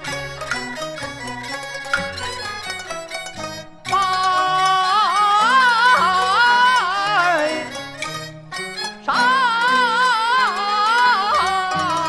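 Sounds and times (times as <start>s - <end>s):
plucked-string accompaniment: 0.0s - 12.0s
wavering opera melody: 0.0s - 12.0s.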